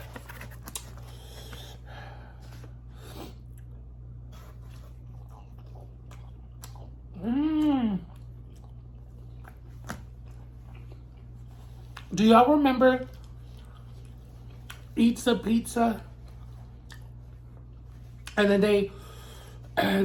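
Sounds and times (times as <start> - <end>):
steady low hum: 0.0 - 20.0
chewing and biting food: 3.3 - 12.1, 13.0 - 15.0, 16.1 - 18.4
person humming mmm: 7.1 - 8.2.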